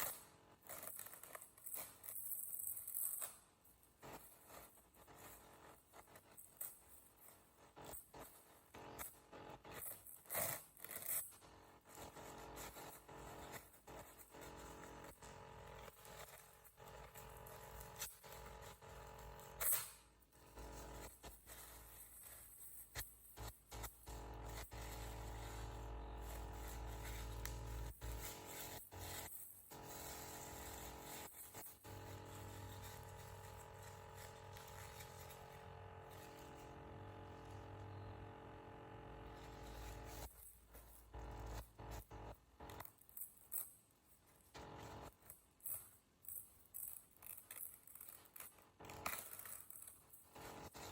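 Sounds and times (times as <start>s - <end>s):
steady electronic hum: 11.7s - 42.8s
paper towels crinkling: 20.5s - 37.8s.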